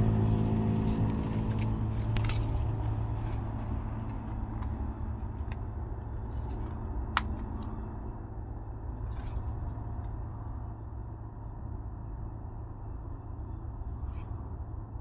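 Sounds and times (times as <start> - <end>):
heat pump humming: 0.0 - 15.0.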